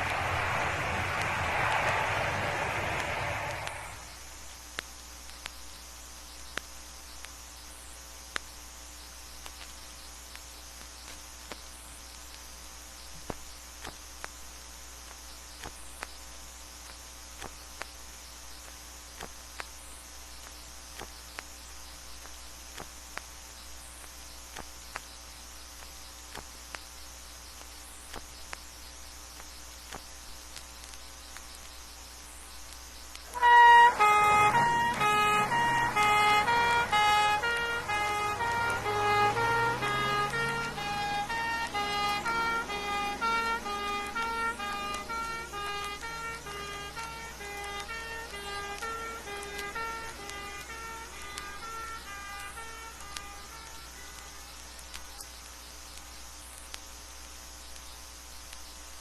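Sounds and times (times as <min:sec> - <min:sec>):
record clicks and pops: 0:00.0 - 0:38.8, 0:39.4 - 0:59.0
record surface hiss and hum: 0:00.0 - 0:59.0
fire engine two-tone horn: 0:33.3 - 0:54.4.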